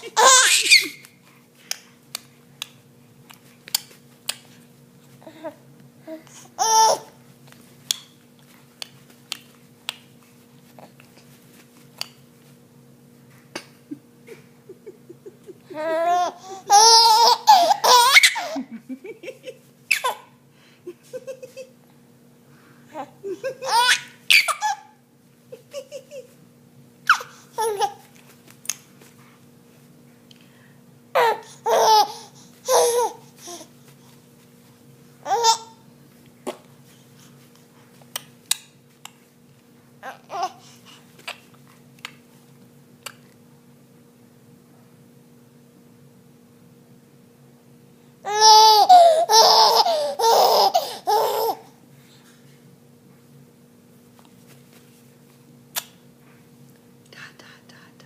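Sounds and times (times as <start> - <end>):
baby laughing: 0.0 - 1.1, 6.6 - 7.2, 14.7 - 20.3, 21.0 - 21.8, 23.0 - 26.4, 27.1 - 28.1, 31.2 - 33.7, 35.2 - 35.8, 48.3 - 51.7
steady low hum: 0.0 - 58.0.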